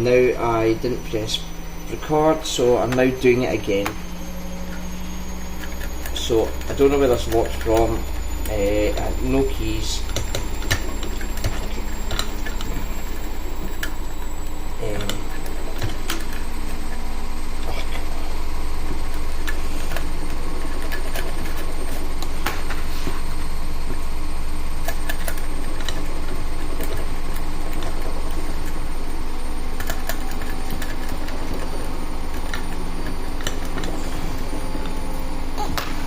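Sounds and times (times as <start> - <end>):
washing machine drone: 0.0 - 36.0.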